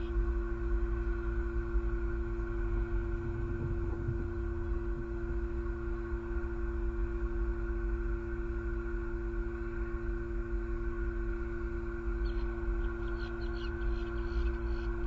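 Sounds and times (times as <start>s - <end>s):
low rumble: 0.0s - 8.6s
hum of held tones: 0.0s - 15.0s.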